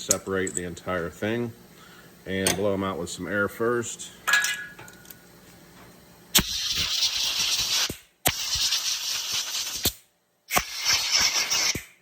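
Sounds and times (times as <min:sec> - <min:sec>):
compressed air blasts hissing: 0:06.3 - 0:12.0.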